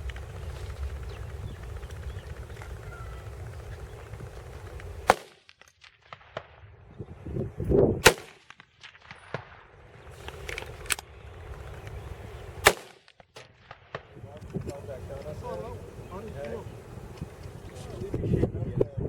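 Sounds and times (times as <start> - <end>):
distant gunshots: 0.0 - 6.6, 8.0 - 14.2
rifle shots: 1.7 - 6.6, 8.0 - 14.2.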